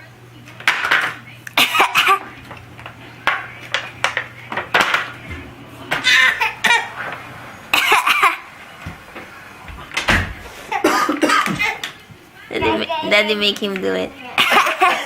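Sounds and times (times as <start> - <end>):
small child laughing: 6.0 - 6.9, 7.7 - 8.5, 14.4 - 15.0
people laughing and giggling: 14.3 - 15.0.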